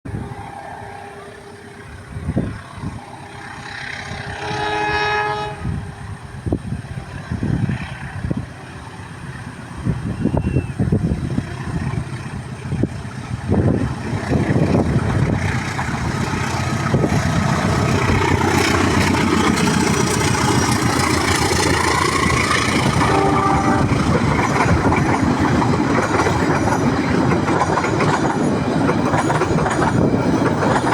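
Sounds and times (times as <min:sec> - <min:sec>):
train passing rumble: 0:00.1 - 0:30.9
train horn: 0:04.1 - 0:06.0, 0:22.8 - 0:24.2
wheels clacking over rail joints: 0:11.5 - 0:30.9.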